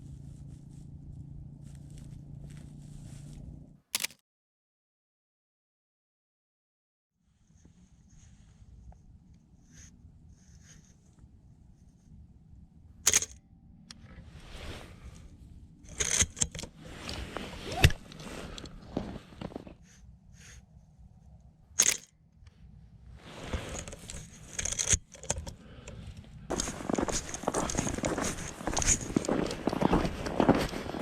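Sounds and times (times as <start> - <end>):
rustle of movement: 0.0 - 3.6, 14.0 - 20.6, 23.1 - 31.0
camera handling noises: 4.0 - 4.2, 13.1 - 13.4, 15.9 - 19.7, 23.4 - 31.0
camera shutter click: 4.0 - 4.2.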